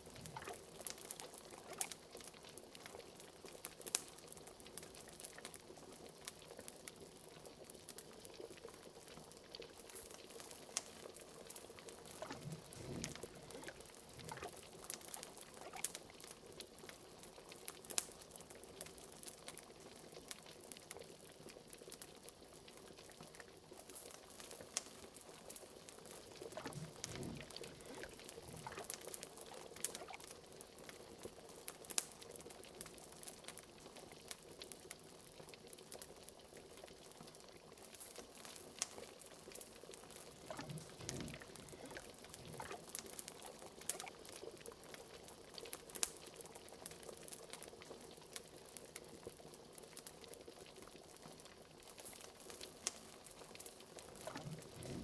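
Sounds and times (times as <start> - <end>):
cauldron bubbling: 0.0 - 2.1, 11.8 - 16.2, 25.7 - 30.3, 39.8 - 44.4, 54.0 - 55.0
fireplace crackling: 9.8 - 15.8, 24.4 - 30.2, 39.5 - 44.1, 52.1 - 55.0
deep gloop: 12.1 - 14.6, 26.4 - 29.0, 40.3 - 42.9, 54.2 - 55.0.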